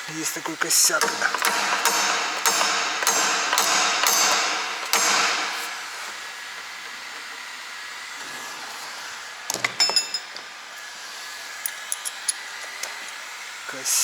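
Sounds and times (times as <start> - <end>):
steady hiss: 0.0 - 14.0
metal tools clinking: 9.5 - 10.5, 11.6 - 13.0.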